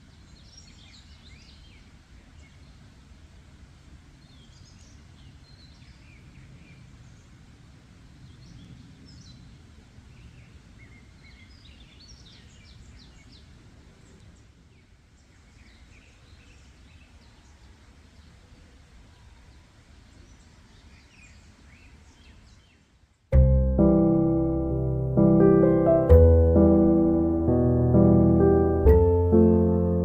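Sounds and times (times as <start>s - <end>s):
small birds chirping and trilling: 8.2s - 18.5s, 19.2s - 22.9s
low background rumble: 23.4s - 30.0s.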